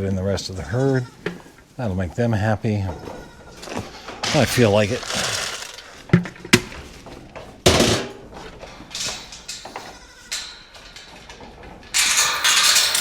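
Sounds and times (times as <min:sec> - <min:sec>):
gate latch rattling clank: 0:11.9 - 0:13.0
sharp metal knocks: 0:12.0 - 0:13.0.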